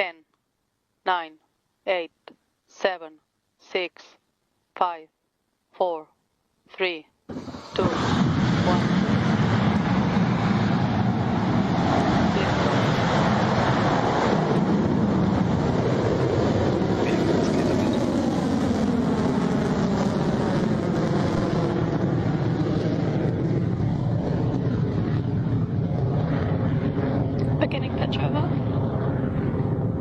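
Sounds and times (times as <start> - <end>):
rocket engines roaring: 7.3 - 30.0.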